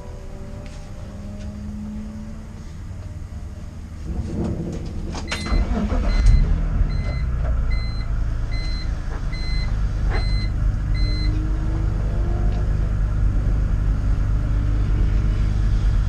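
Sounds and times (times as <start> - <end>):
car engine starting and running: 0.0 - 16.0
electronic warning chime beeping: 5.4 - 11.3.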